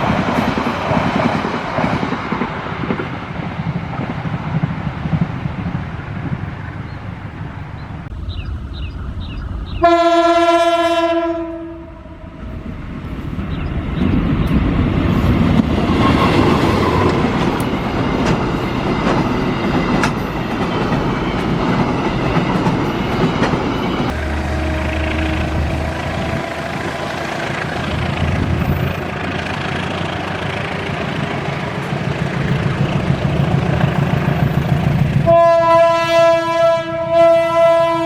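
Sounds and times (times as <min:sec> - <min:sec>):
train rumbling: 0:00.0 - 0:38.0
locomotive horn blast: 0:09.8 - 0:12.4, 0:24.1 - 0:30.2, 0:35.2 - 0:38.0
wheels clicking over rail joints: 0:13.4 - 0:35.2.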